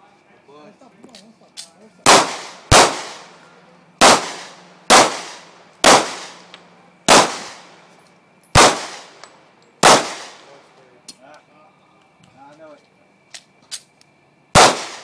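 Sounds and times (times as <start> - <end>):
pistol shots with echo: 2.0 - 3.4, 4.0 - 7.8, 8.5 - 10.6, 14.6 - 15.0.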